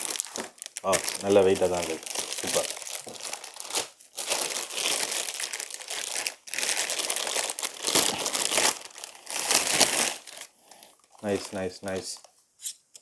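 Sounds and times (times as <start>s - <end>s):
packaging crinkling and rustling: 0.0s - 12.2s.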